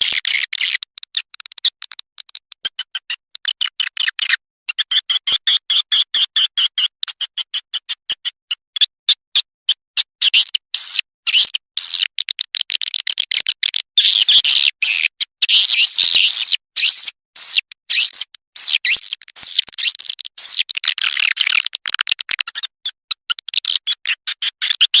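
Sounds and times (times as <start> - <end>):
rapid bird clicks: 0.0 - 4.4, 11.4 - 13.9, 17.6 - 25.0
high twittering bird chirps: 13.7 - 21.6.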